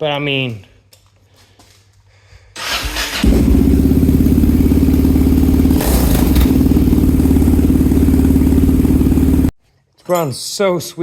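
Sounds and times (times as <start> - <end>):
loud motorcycle engine running: 3.1 - 9.5.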